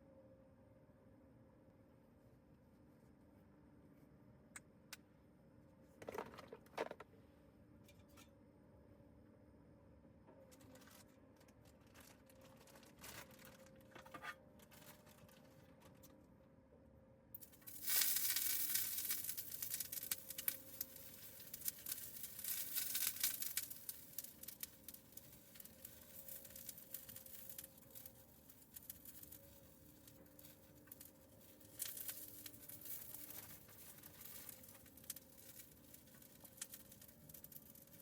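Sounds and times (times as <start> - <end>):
packaging crinkling and tearing: 10.5 - 16.1, 17.8 - 38.0.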